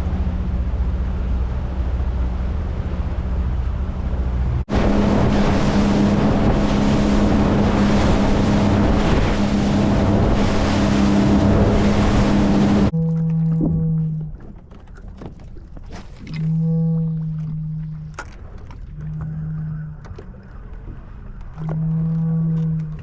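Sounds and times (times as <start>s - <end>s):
boat motor running: 0.0s - 23.0s
water noise: 0.0s - 23.0s
wind on microphone: 4.0s - 14.5s.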